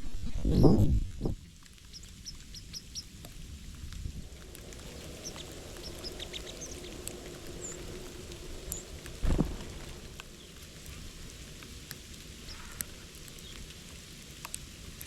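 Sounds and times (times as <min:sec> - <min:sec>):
small birds chirping: 0:01.4 - 0:03.3, 0:04.2 - 0:13.8.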